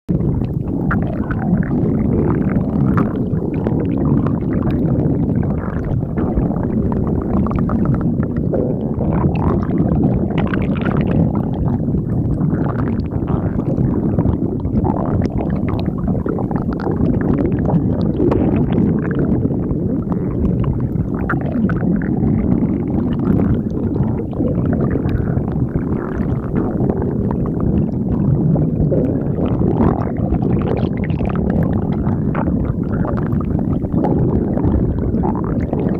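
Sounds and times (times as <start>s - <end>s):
stomach growling: 0.1s - 35.9s.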